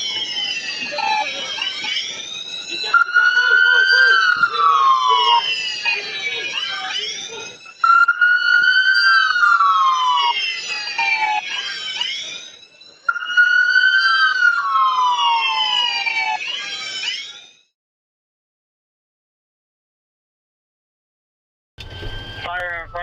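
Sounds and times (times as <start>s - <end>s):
police siren wailing: 0.0s - 17.3s.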